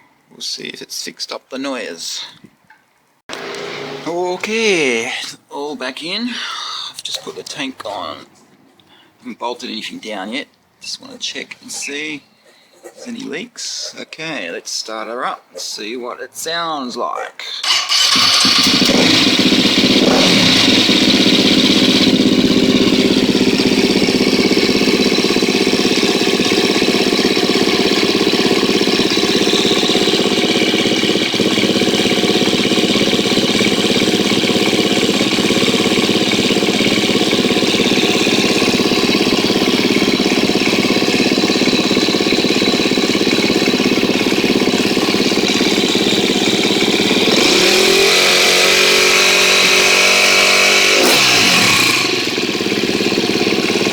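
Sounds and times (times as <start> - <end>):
motorcycle engine idling: 17.6 - 53.9.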